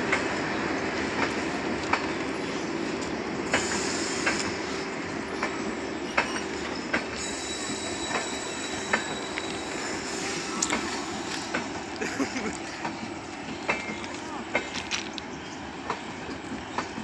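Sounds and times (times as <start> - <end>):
train rumbling on rails: 0.0 - 17.0.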